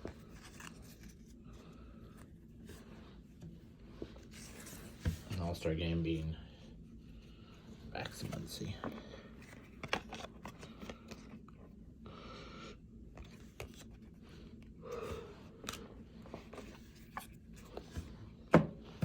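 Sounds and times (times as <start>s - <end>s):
cards rustling and clicking: 0.0s - 2.7s, 8.0s - 11.6s, 13.1s - 14.6s.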